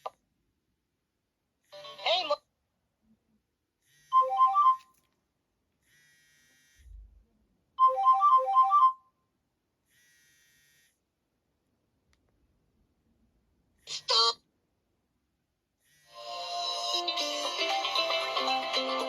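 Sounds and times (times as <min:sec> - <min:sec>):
electronic phone ringtone: 0:04.1 - 0:04.9, 0:07.8 - 0:09.0, 0:16.1 - 0:19.0.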